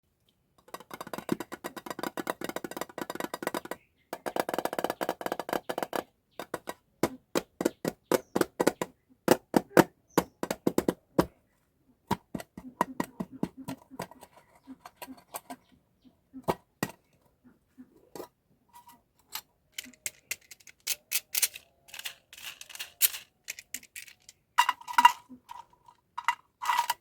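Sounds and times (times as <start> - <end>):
taps and clicks on packaging: 0.7 - 11.3.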